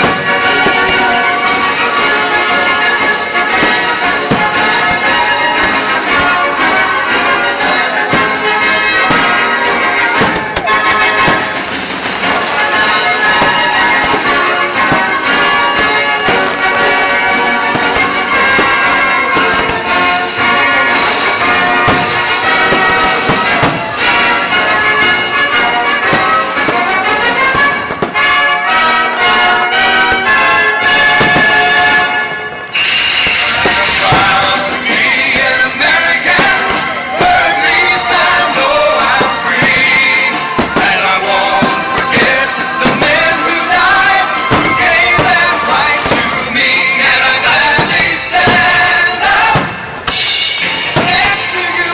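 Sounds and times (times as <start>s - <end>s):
fireworks bursting: 0.0s - 51.9s
orchestral music with brass: 0.0s - 51.9s.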